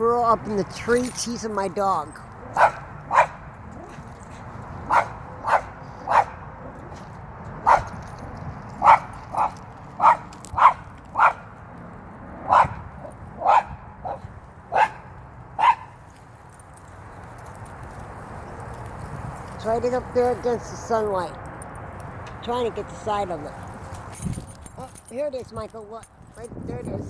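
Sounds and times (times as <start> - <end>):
dog barking: 2.5 - 3.4, 4.9 - 6.4, 7.6 - 7.9, 8.8 - 11.4, 12.5 - 12.8, 13.4 - 15.9.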